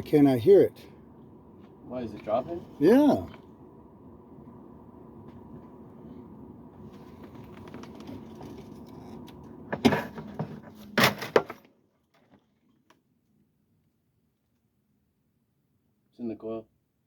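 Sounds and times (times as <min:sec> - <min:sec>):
furnace blower humming: 0:00.0 - 0:11.5.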